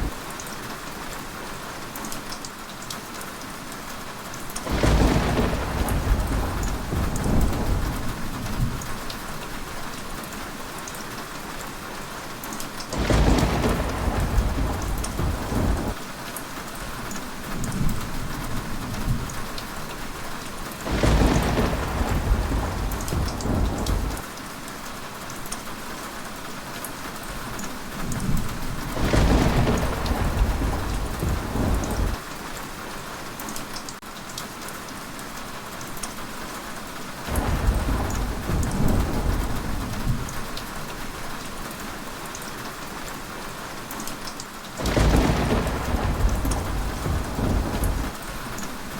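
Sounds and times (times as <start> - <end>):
heavy rain: 0.0 - 48.9
thunder rolling: 4.7 - 9.9, 13.0 - 16.0, 20.8 - 24.2, 28.1 - 32.2, 37.3 - 41.0, 44.8 - 48.4.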